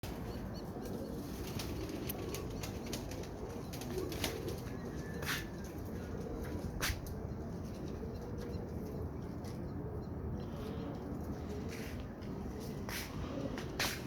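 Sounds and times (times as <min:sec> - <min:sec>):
low background noise: 0:00.0 - 0:14.0
pigeons flapping wings: 0:01.2 - 0:05.7.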